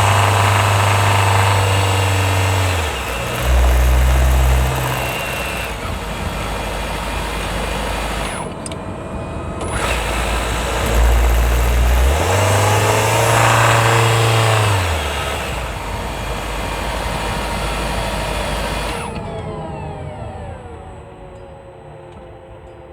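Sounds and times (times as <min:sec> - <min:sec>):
car engine revving: 0:00.0 - 0:08.6, 0:09.7 - 0:19.2.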